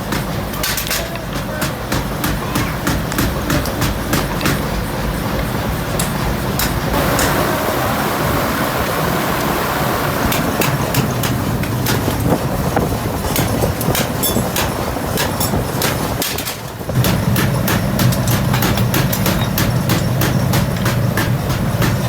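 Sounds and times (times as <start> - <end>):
workshop machinery running: 0.0 - 22.0
sharp metallic knocks: 10.3 - 22.0.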